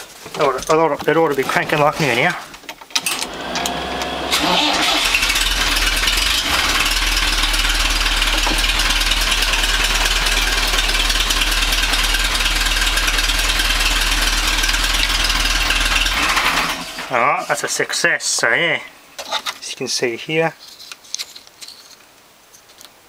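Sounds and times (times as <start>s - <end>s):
tractor engine running: 0.4s - 17.2s.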